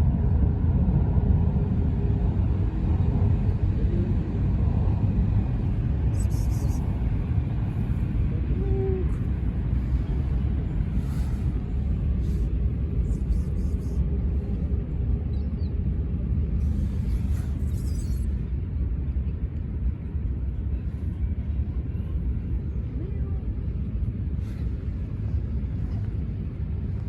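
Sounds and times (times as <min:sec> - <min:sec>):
low outdoor rumble: 0:00.0 - 0:27.0.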